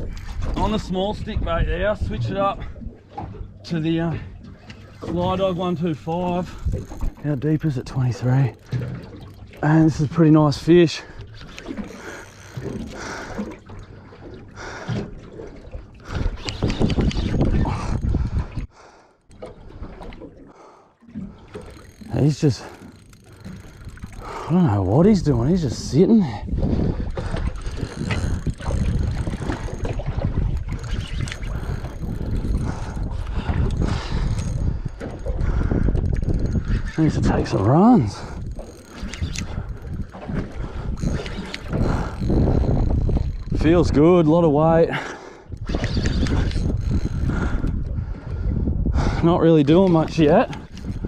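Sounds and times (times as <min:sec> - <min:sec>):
water lapping against boat hull: 0:00.0 - 0:51.0
rough buffeting noise: 0:20.5 - 0:51.0.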